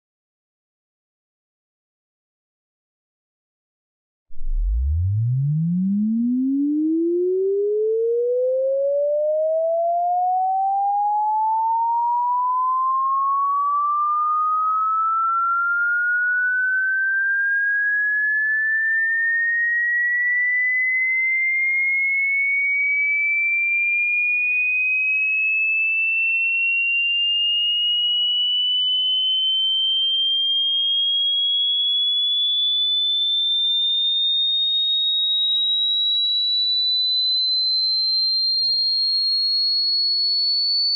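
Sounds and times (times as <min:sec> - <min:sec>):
sine tone sweeping upward: 0:04.3 - 0:21.0, 0:27.8 - 0:36.0.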